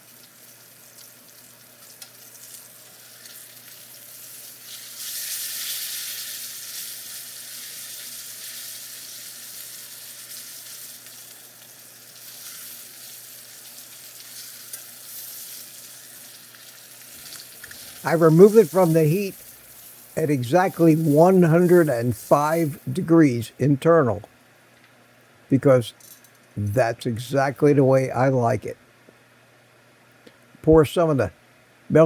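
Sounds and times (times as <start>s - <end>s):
steak sizzling in a pan: 0.0s - 22.9s.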